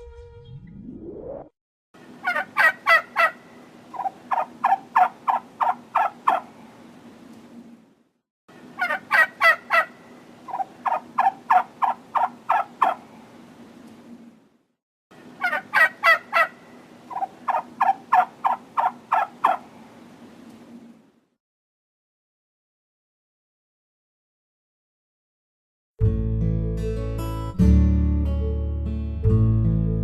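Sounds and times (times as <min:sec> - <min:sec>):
turkey gobbling: 0:02.2 - 0:06.5, 0:08.8 - 0:13.0, 0:15.4 - 0:19.6.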